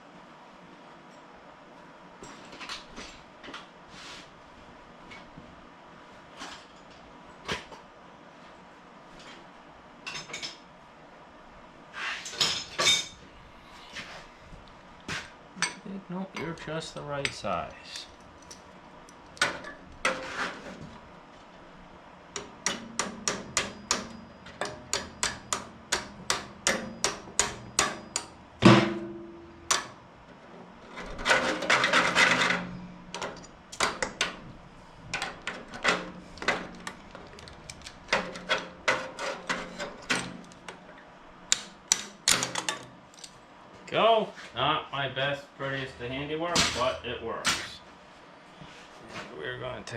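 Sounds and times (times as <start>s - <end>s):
hammer tapping on metal: 22.4s - 29.9s.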